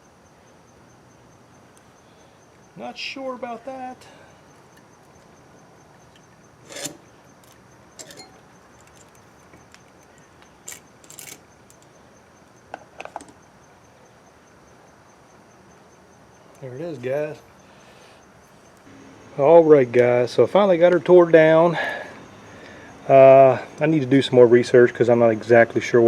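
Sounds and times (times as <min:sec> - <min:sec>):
metallic clinks of tools and parts: 0:06.0 - 0:11.9.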